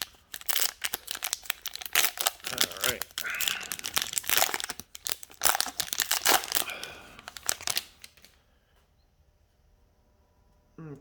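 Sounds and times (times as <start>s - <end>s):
card pack wrapper crinkling and tearing: 0.0s - 8.4s.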